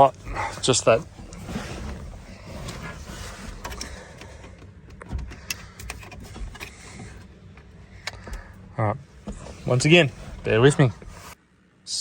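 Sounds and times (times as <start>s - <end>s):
scraping and rattling of parts: 0.0s - 8.6s.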